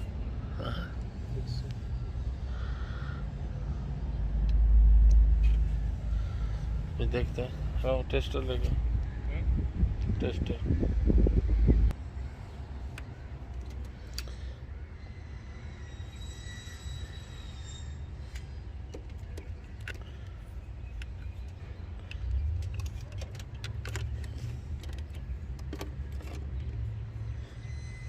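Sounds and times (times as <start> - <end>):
steady low rumble: 0.0 - 13.7.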